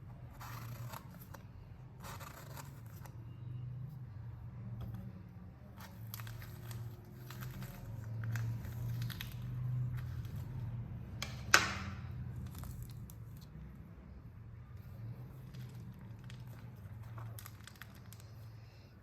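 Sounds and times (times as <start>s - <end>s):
rustling and crinkling: 5.8s - 10.8s, 15.1s - 18.6s.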